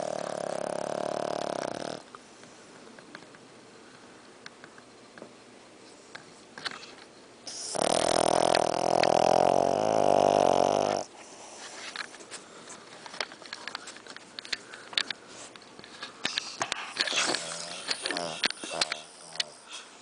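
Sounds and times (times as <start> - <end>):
dog snoring: 0.0 - 2.1, 7.5 - 11.5, 16.3 - 19.6
quiet breathing: 11.0 - 20.0.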